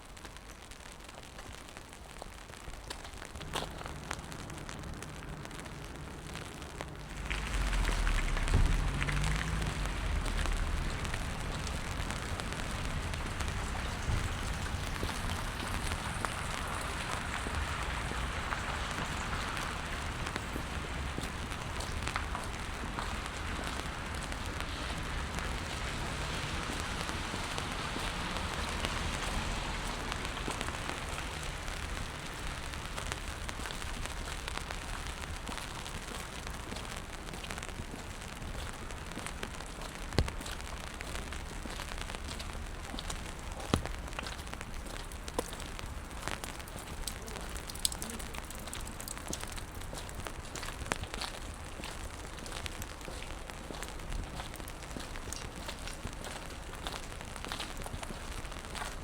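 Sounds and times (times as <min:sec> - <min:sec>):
rain on wet pavement: 0:00.0 - 0:59.0
low rumble: 0:03.4 - 0:19.3.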